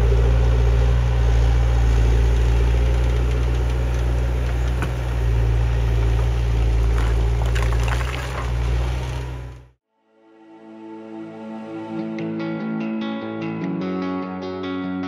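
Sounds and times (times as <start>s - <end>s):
diesel engine running: 0.0s - 9.8s.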